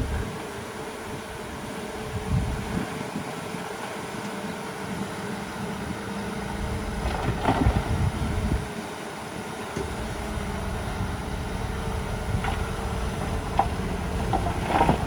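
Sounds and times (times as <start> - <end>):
heavy diesel engine running: 3.7 - 15.0.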